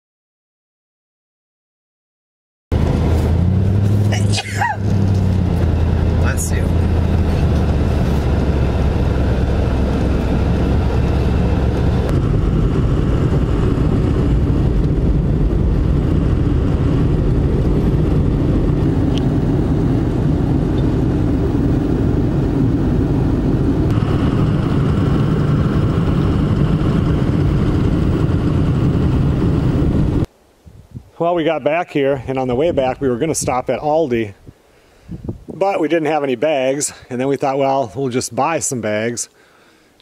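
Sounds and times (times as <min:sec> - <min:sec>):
vehicle engine and road noise: 0:02.7 - 0:30.4.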